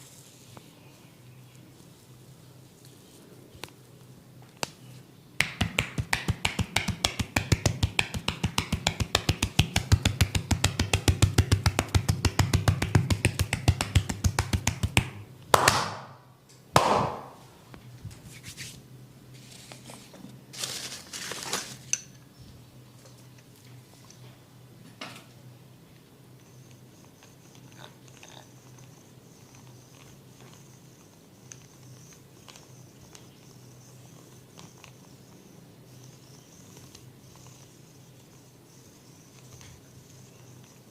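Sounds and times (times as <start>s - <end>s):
hand slaps of massage: 5.4s - 16.2s, 16.8s - 17.4s
hands brushing over hair: 18.1s - 18.8s.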